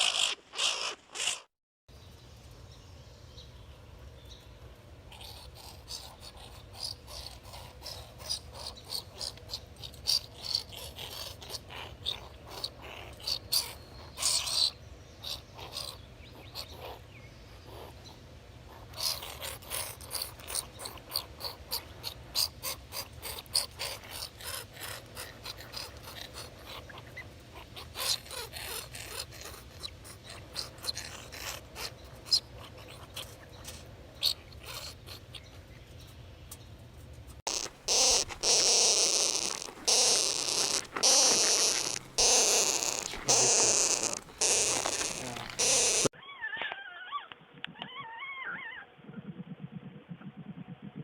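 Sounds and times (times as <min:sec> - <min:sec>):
skunk clicks and chirps: 0:00.0 - 0:01.5, 0:05.1 - 0:17.0, 0:18.8 - 0:36.7, 0:37.5 - 0:46.1
skunk noisy bursts: 0:37.5 - 0:46.1.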